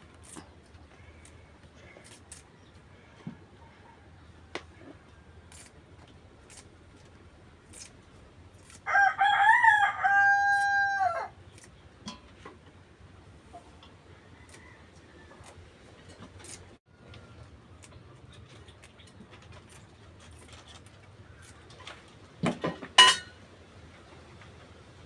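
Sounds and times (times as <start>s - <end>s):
rooster crowing: 8.8s - 11.4s, 14.2s - 15.5s.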